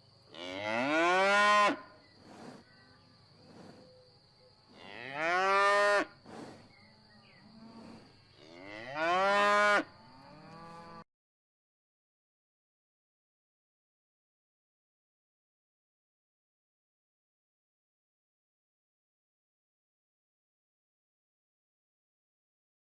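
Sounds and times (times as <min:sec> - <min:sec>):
cow mooing: 0:00.4 - 0:01.9, 0:04.7 - 0:06.2, 0:07.1 - 0:11.0.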